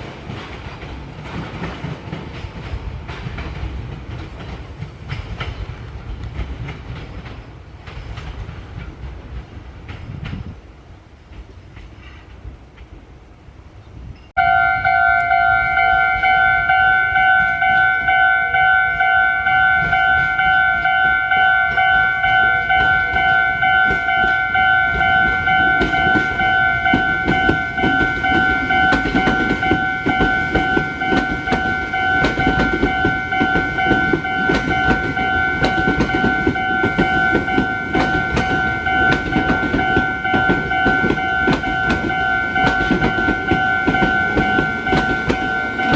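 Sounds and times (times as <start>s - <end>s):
rail clatter: 0.0s - 13.3s, 14.1s - 45.9s
train rumble: 0.0s - 45.9s
level crossing alarm: 14.4s - 45.9s.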